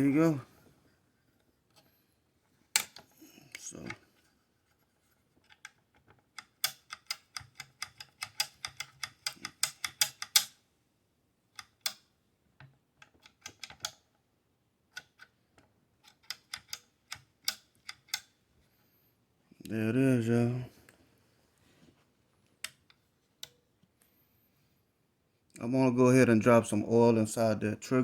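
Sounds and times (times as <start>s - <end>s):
metal clicks of rifle parts: 5.4s - 10.6s.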